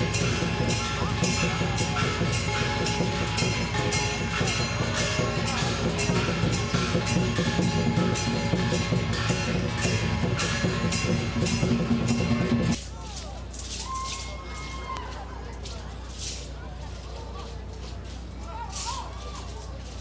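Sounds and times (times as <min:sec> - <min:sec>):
music with drum beat: 0:00.0 - 0:12.8.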